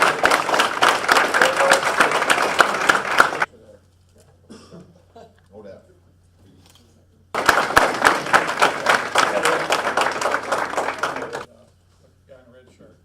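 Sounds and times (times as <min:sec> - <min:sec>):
audience applauding: 0:00.0 - 0:03.5, 0:07.4 - 0:11.5.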